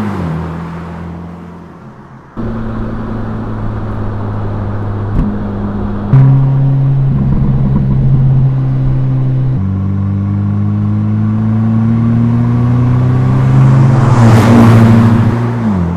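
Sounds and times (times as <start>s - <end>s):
car engine accelerating: 0.0s - 15.9s
broad rush of noise: 2.1s - 6.2s.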